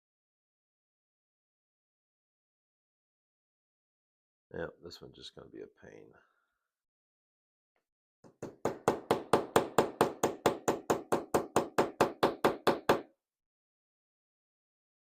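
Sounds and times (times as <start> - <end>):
rapid hammer taps: 8.2 - 13.1.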